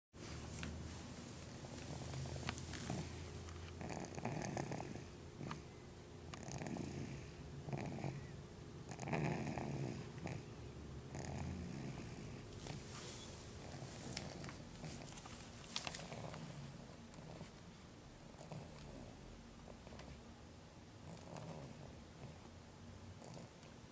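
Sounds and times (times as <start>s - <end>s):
person snoring: 3.8s - 5.6s.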